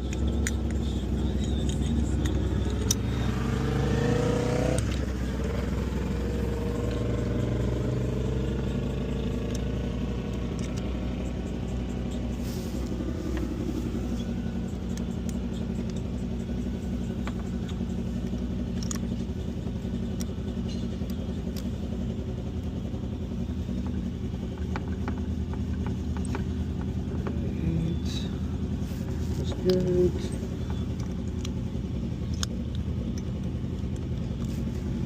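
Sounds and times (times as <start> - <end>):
metallic clicks and taps of tools: 0.0 - 3.3, 8.5 - 12.3, 14.2 - 21.9, 23.7 - 27.4, 29.4 - 34.6
low engine hum: 0.0 - 35.0.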